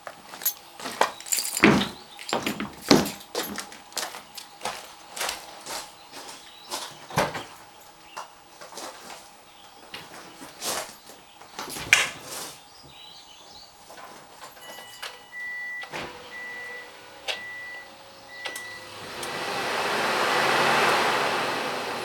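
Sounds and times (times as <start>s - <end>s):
dashboard warning chime beeping: 14.6s - 19.0s
car clunks and knocks: 14.9s - 19.4s
engine cranking by starter: 15.4s - 22.0s.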